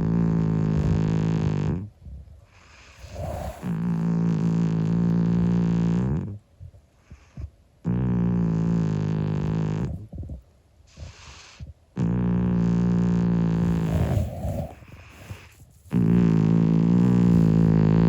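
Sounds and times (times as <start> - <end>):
cat snoring: 0.0 - 1.9, 2.5 - 6.4, 7.0 - 18.0.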